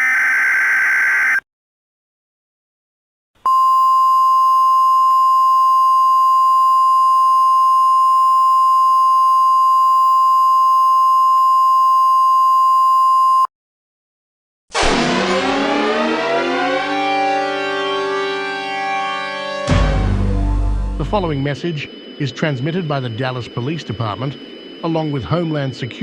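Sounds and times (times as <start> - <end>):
loud siren-like sound: 0.0 - 1.4, 14.7 - 20.0.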